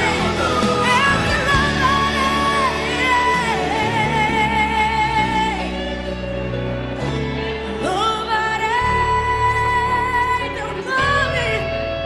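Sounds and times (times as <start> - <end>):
band accompaniment: 0.0 - 8.9.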